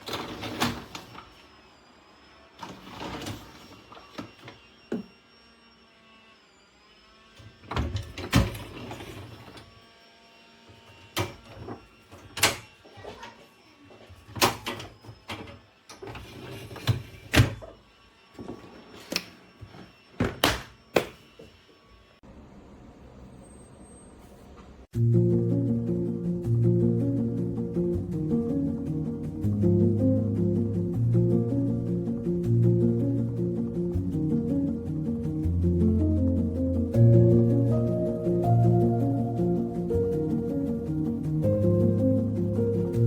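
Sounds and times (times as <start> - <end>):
dishwasher baskets sliding on rails: 0.0 - 1.4, 2.6 - 4.3, 7.7 - 9.7, 14.3 - 17.7.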